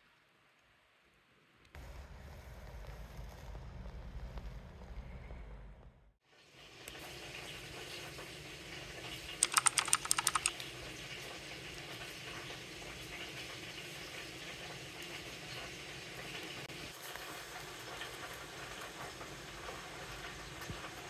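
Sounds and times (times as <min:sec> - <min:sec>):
rapid sharp clicks: 0:09.4 - 0:10.6.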